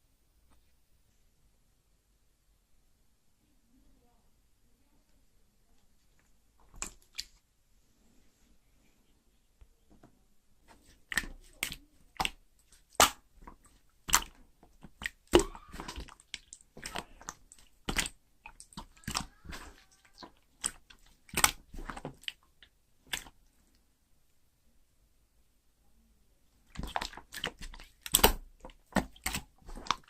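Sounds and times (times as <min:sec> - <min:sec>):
slime squishing and popping: 0:10.8 - 0:23.4, 0:26.7 - 0:30.0.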